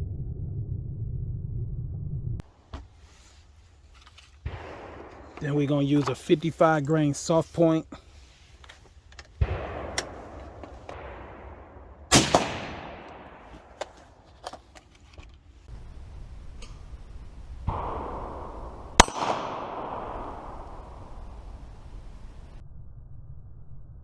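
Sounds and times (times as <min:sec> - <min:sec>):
rifle shots echoing: 0:04.4 - 0:08.6, 0:09.3 - 0:14.5, 0:17.7 - 0:21.8.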